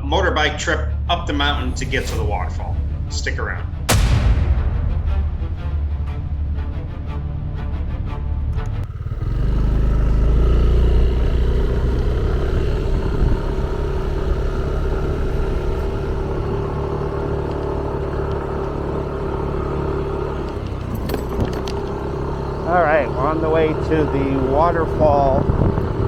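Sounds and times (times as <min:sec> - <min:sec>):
motorbike engine running: 0:08.4 - 0:26.0.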